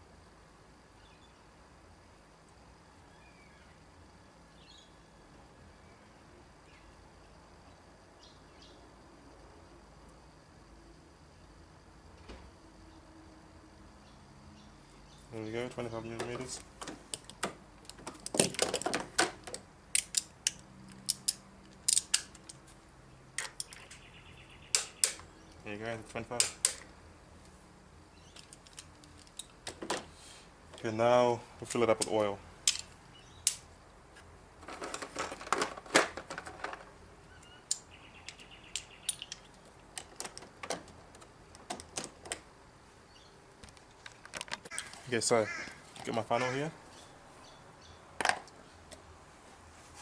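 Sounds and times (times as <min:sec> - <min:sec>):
hand tools clattering: 0:34.6 - 0:37.0.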